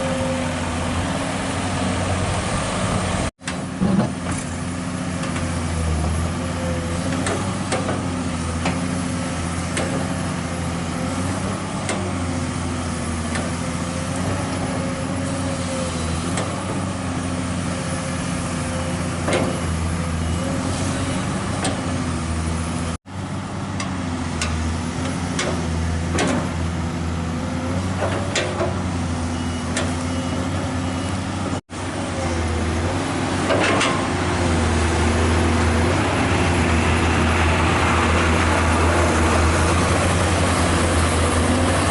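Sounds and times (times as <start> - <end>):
heavy diesel machinery running: 0.0 - 41.9
metallic clanks and knocks: 33.5 - 34.1.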